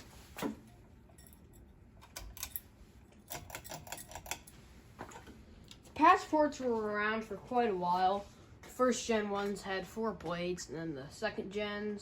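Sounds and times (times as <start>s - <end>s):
ceiling fan clicking: 0.4s - 4.6s.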